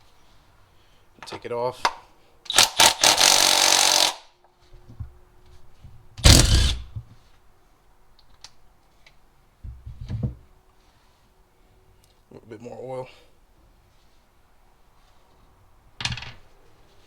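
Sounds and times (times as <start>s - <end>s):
power tool running in bursts: 2.5s - 4.2s, 6.2s - 6.8s.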